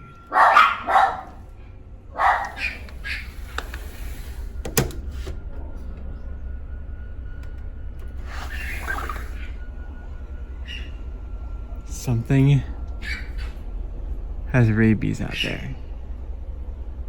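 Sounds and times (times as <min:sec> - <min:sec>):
animal cries: 0:00.0 - 0:01.4, 0:02.1 - 0:03.6, 0:10.6 - 0:11.1, 0:12.9 - 0:13.8
steady low hum: 0:00.0 - 0:17.0.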